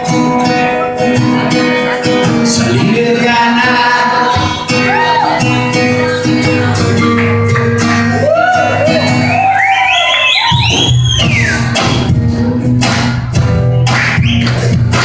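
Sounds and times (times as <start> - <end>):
live band music: 0.0 - 15.0
shouted whoops: 4.7 - 5.7, 8.1 - 11.5.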